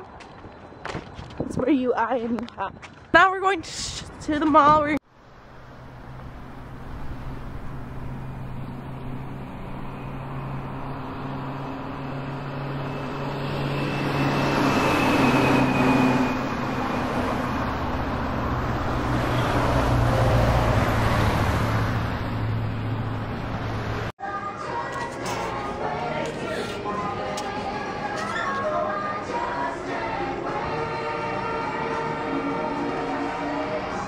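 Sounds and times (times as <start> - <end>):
road noise: 0.0 - 34.0
car engine hum: 5.1 - 13.9.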